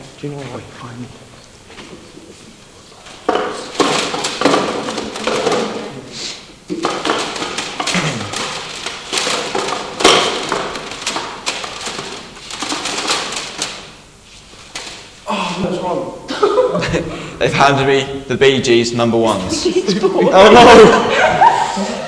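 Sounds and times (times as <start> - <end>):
album cases clattering: 3.0 - 6.0, 6.6 - 15.2
sharp knocks: 3.2 - 5.9, 6.7 - 14.0.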